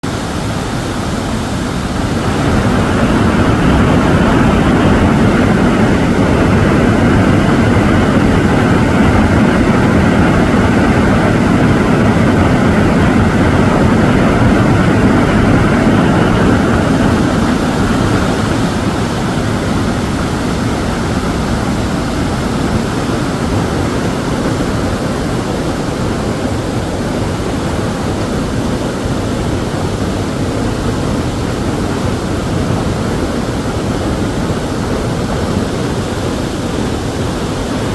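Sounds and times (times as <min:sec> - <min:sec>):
rushing waterfall and river: 0:00.0 - 0:37.9.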